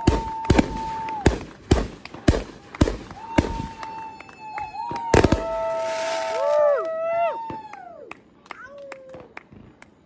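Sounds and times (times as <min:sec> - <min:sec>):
firework bangs: 0:00.0 - 0:06.7
whistling firework: 0:00.0 - 0:10.0.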